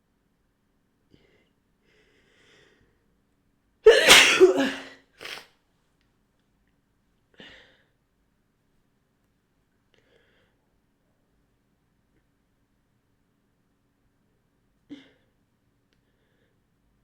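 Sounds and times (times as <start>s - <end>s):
faint breaths: 1.1s - 3.1s
woman sneezing: 3.9s - 5.4s.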